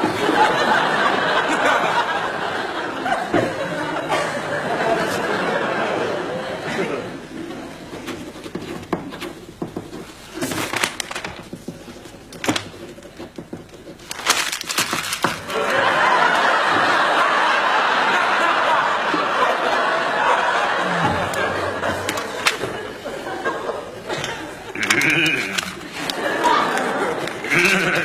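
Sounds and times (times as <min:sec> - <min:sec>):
studio audience laughter: 0:00.0 - 0:07.9, 0:15.4 - 0:28.0.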